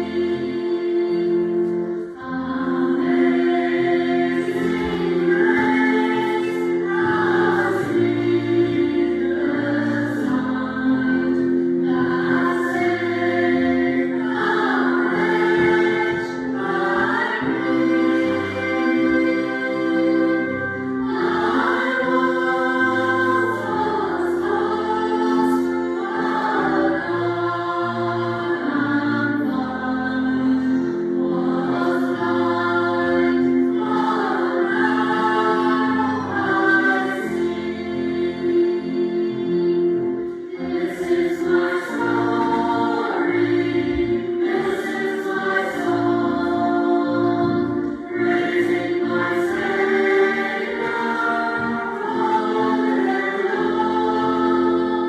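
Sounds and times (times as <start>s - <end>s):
church choir singing a hymn: 0.0s - 55.0s
low accompanying notes: 0.0s - 55.0s.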